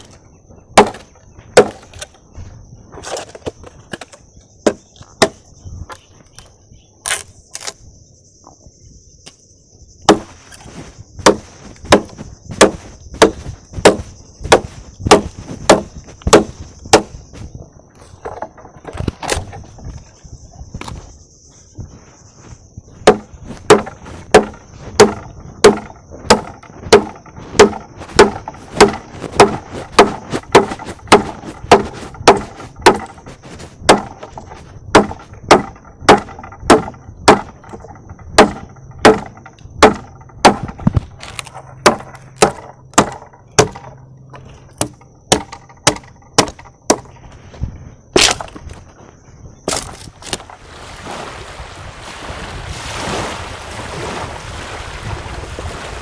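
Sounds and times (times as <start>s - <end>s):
wood being chopped: 0.8s - 2.1s, 3.0s - 5.4s, 10.1s - 10.4s, 11.2s - 17.2s, 23.0s - 47.2s, 48.2s - 48.8s, 49.7s - 50.6s.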